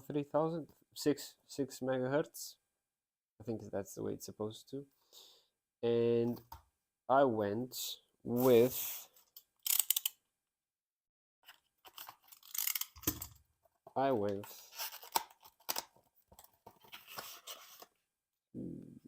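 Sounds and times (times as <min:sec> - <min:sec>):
short vocal sound: 0:18.6 - 0:19.0.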